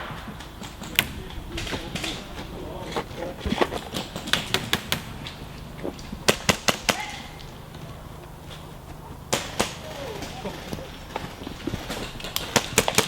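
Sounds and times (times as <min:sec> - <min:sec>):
airsoft rifle shots: 0:00.0 - 0:02.4, 0:03.9 - 0:05.4, 0:06.2 - 0:07.4, 0:09.3 - 0:10.5, 0:11.9 - 0:13.0.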